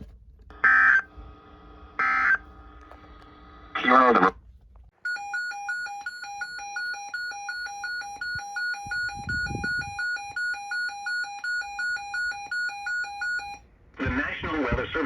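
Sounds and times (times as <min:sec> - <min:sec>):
electronic two-tone alert: 0:05.1 - 0:13.6.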